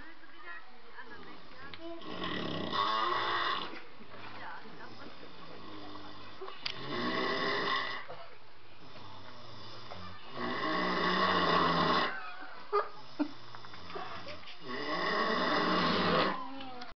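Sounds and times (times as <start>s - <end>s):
pig snoring: 2.0s - 3.8s, 5.3s - 8.1s, 8.9s - 12.2s, 13.0s - 16.5s.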